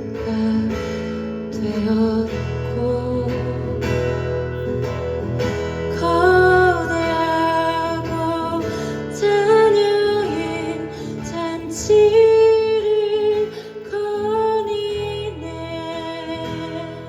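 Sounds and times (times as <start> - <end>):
acoustic guitar strumming: 0.0 - 17.0
held melody line: 1.8 - 13.4.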